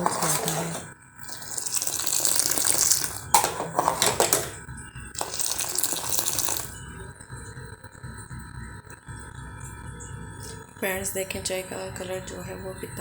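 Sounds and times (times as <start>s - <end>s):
tea bubbling in a pan: 0.0s - 7.4s.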